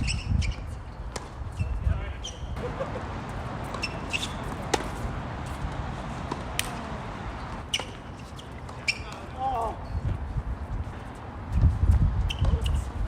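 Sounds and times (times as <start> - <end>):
wind on microphone: 0.0 - 2.2, 9.8 - 13.0
tennis balls struck: 3.6 - 8.0.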